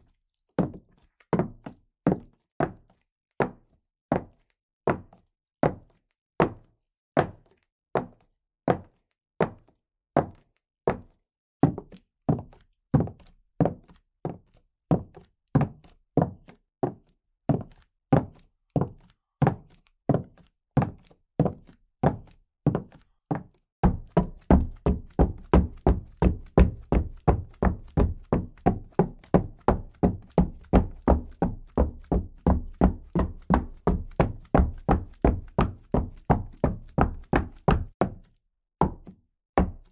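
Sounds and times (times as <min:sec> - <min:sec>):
footsteps walking and running: 0:23.8 - 0:39.8.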